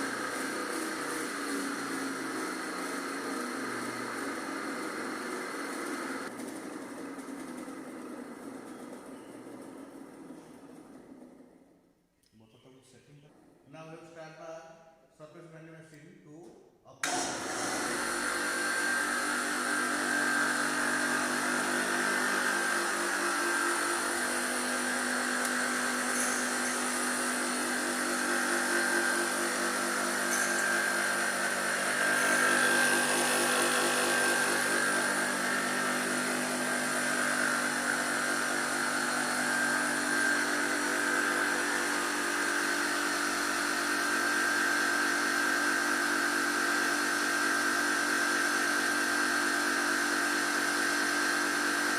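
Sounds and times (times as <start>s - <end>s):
grinding machine motor hum and whine: 17.0s - 51.9s.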